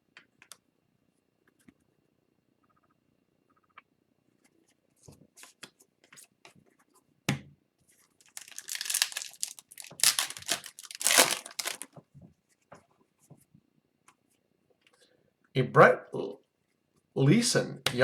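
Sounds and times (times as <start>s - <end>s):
foil wrapper tearing and crinkling: 8.3s - 11.9s.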